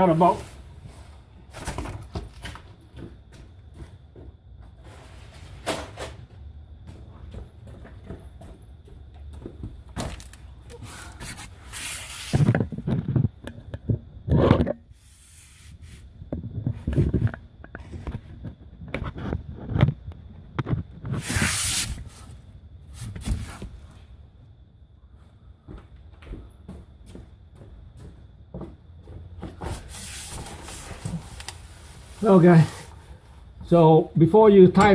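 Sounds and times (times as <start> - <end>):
parts scraping and rubbing: 10.1 - 13.2, 21.0 - 22.4.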